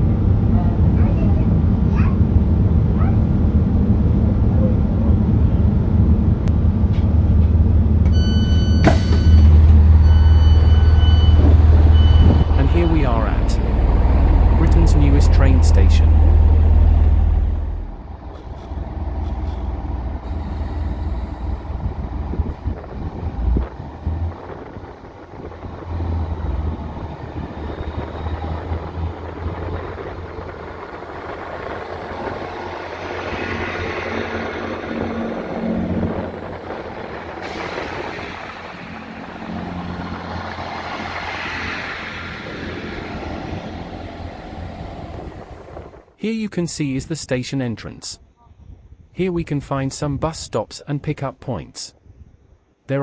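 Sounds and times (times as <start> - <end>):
diesel train rumbling: 0.0 - 46.2
wash of noise: 9.8 - 19.0, 19.9 - 46.2.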